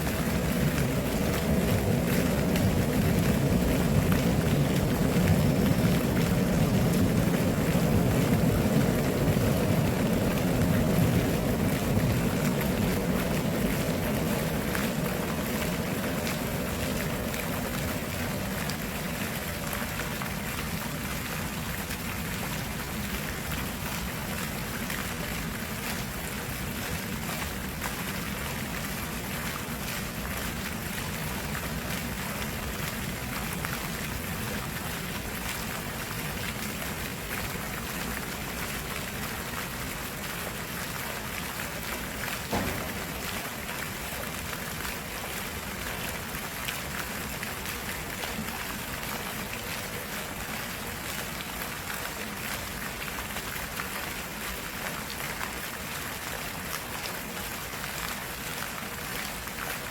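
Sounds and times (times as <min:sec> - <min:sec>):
water rushing in a stream: 0:00.0 - 0:59.9
brief knock: 0:42.5 - 0:43.1.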